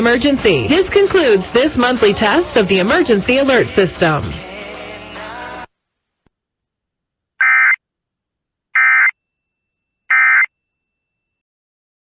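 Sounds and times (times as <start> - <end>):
short electronic data bursts: 7.4 - 7.8, 8.8 - 9.2, 10.1 - 10.5.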